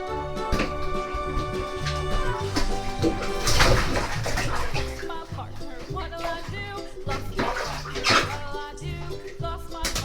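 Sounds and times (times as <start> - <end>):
background music with light beat: 0.0 - 10.0.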